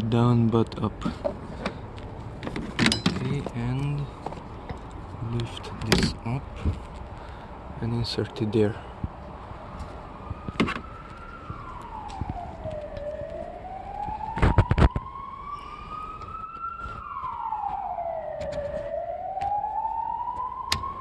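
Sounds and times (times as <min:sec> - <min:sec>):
emergency siren wailing: 0:08.8 - 0:21.0.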